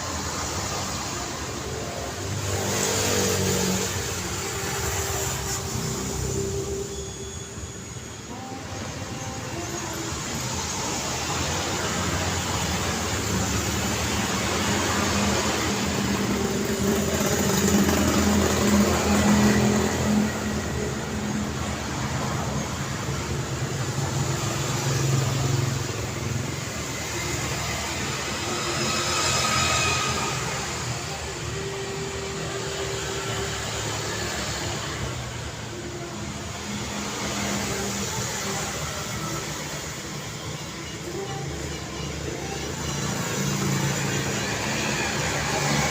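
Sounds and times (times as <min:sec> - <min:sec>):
vehicles passing: 0:00.0 - 0:45.9
brief high tone: 0:04.3 - 0:11.3.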